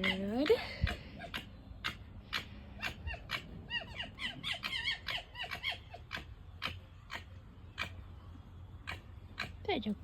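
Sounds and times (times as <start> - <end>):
fox squeaking and chirping: 0.0 - 8.0.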